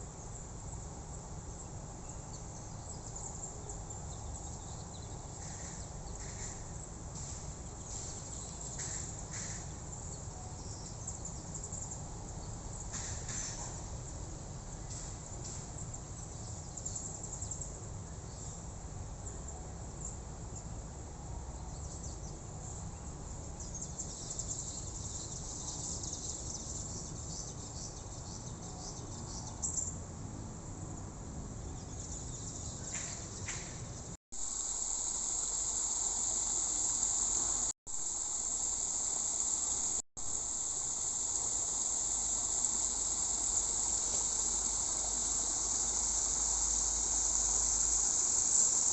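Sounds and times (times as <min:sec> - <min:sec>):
crickets chirping: 0:00.0 - 0:18.5, 0:21.8 - 0:29.9, 0:31.8 - 0:48.9.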